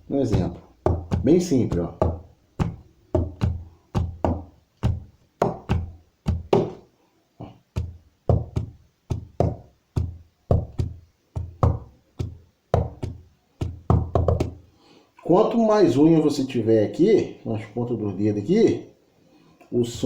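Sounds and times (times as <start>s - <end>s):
hand drumming on wooden table: 0.3s - 14.6s.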